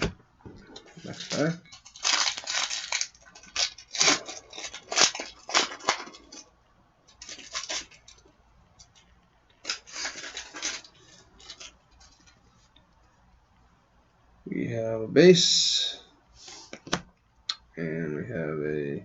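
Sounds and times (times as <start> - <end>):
wrapper tearing and crinkling: 0.9 - 6.5, 7.1 - 8.2, 9.6 - 12.4.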